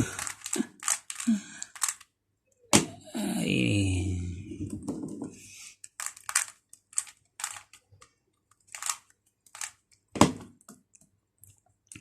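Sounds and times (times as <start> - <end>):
plastic puzzle cube clicking: 0.1 - 2.1, 5.8 - 10.2
puzzle cube clack: 0.1 - 2.1, 8.7 - 10.4.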